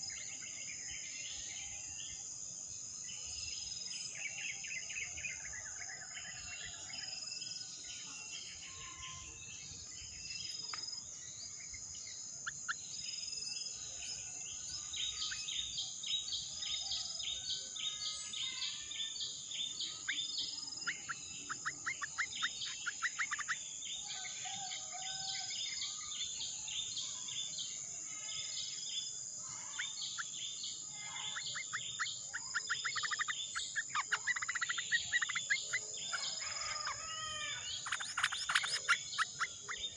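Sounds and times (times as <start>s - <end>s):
birds chirping and trilling: 0.0s - 39.9s
high-pitched insect drone: 17.2s - 39.9s.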